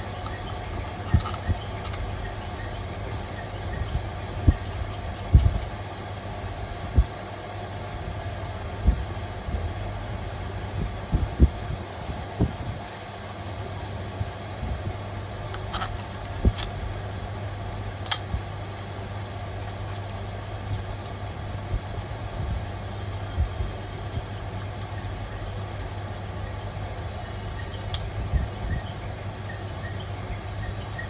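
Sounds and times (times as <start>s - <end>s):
low electrical hum: 0.0s - 31.0s.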